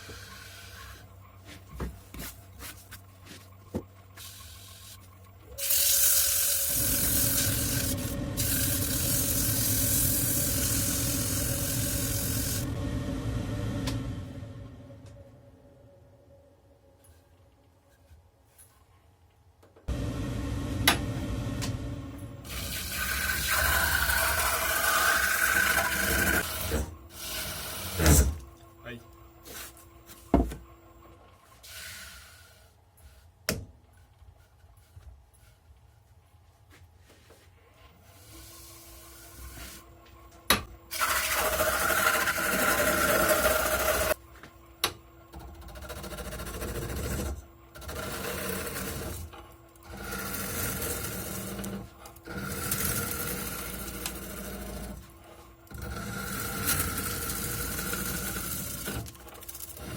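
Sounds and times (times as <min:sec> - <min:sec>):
lathe cutting wood: 0:05.6 - 0:12.7, 0:22.5 - 0:28.4, 0:40.9 - 0:44.2, 0:46.0 - 0:49.2, 0:49.8 - 0:55.0, 0:55.7 - 0:59.9.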